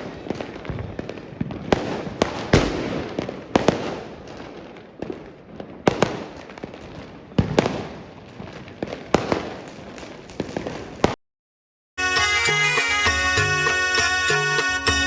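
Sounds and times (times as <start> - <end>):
firecracker crackling: 0.0 - 11.2
firecrackers banging: 0.0 - 11.2.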